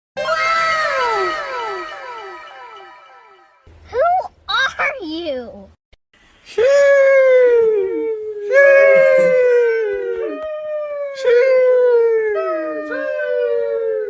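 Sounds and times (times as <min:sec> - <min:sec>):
drawn-out high howling cries: 0:00.2 - 0:02.8.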